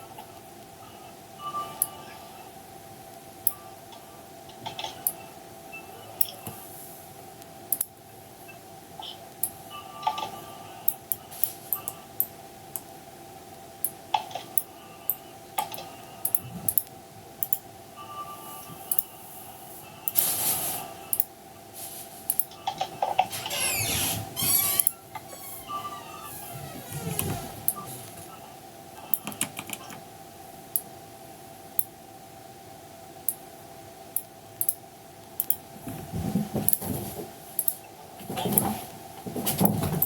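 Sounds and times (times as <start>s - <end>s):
faint steady hum: 0.0s - 40.0s
mouse clicks: 14.6s - 17.6s, 18.8s - 19.1s, 34.2s - 35.6s.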